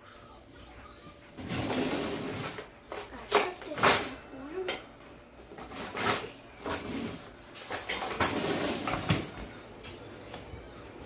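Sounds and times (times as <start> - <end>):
kitchen items knocking and clattering: 1.4 - 4.8, 5.5 - 10.0.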